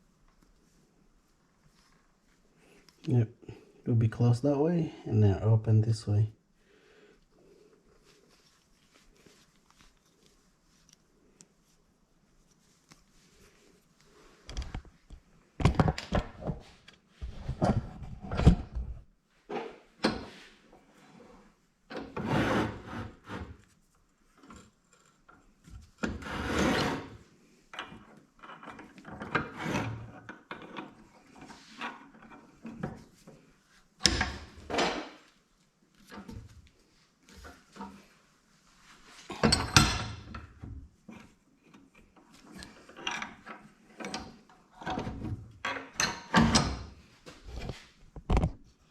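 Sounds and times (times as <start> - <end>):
hands rubbing and scraping metal pipe: 7.7 - 15.2.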